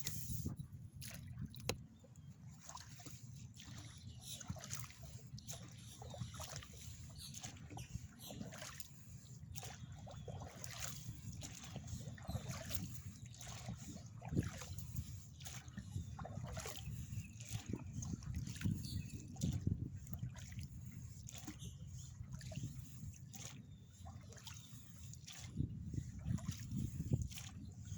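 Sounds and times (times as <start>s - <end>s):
steady low rumble: 0.0s - 2.0s
oars splashing in water: 0.0s - 27.9s.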